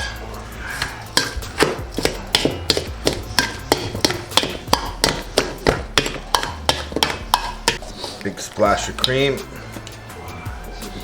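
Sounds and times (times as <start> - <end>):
utensil knocking against bowl: 0.8 - 7.9.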